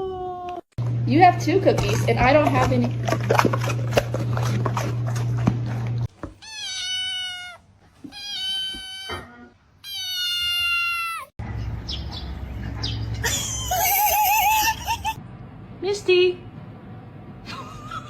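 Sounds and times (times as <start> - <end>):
cat meowing: 6.3 - 11.3.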